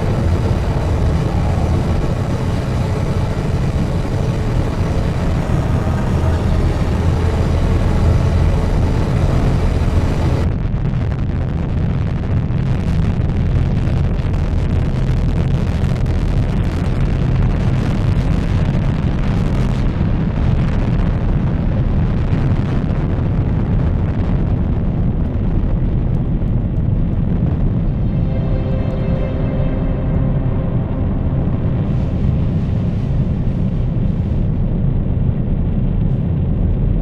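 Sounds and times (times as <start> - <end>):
steady low drone: 0.0 - 11.5, 13.1 - 37.0
crackling distorted noise: 0.0 - 37.0.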